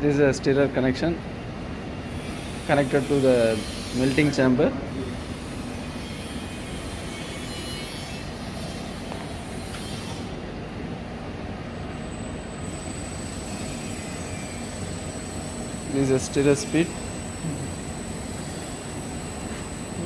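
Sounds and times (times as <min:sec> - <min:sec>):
stirrer motor running: 0:12.6 - 0:20.0.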